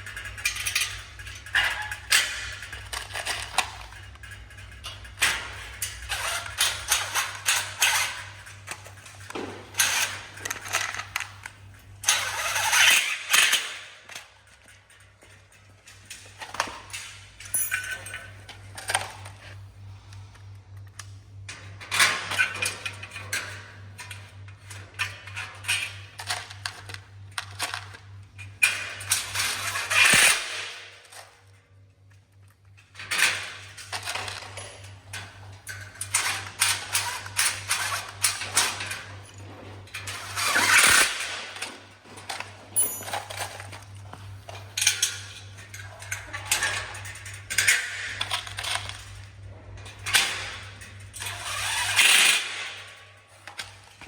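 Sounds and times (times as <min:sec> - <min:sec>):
frame parts clicking and knocking: 0:00.0 - 0:19.6, 0:32.4 - 0:54.0.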